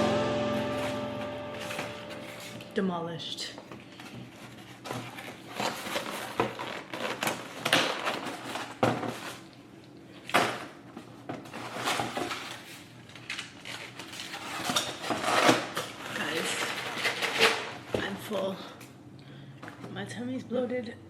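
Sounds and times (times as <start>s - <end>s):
food containers and utensils handled: 3.7s - 9.5s, 10.2s - 18.5s.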